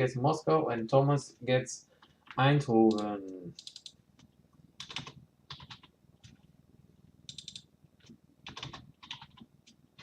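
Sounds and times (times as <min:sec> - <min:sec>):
keyboard typing: 0:02.0 - 0:06.5, 0:07.2 - 0:10.0.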